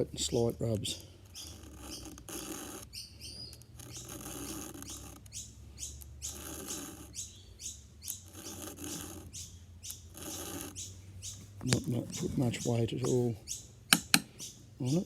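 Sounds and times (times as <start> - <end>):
file rasping on saw chain: 1.3 - 2.9, 3.7 - 7.3, 8.0 - 10.9.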